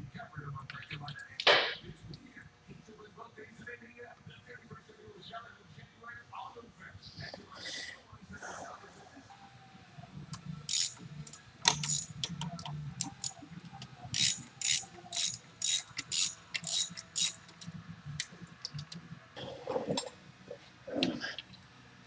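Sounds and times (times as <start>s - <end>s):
ratchet wrench clicking: 10.7s - 13.4s, 14.2s - 17.7s.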